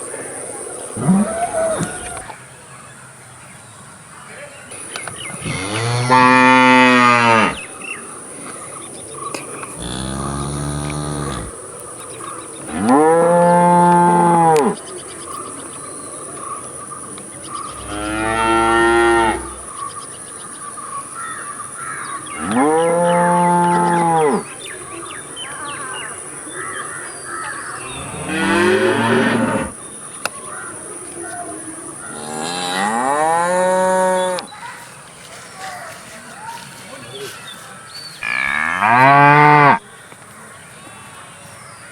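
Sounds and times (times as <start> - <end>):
cattle mooing: 5.4 - 7.6, 9.8 - 11.5, 17.8 - 19.7, 22.4 - 24.4, 28.0 - 29.7.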